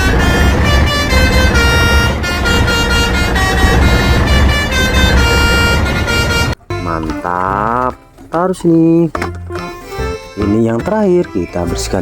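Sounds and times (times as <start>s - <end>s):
steady low rumble: 0.0s - 7.8s
multi-tone bus horn tune: 0.0s - 7.9s.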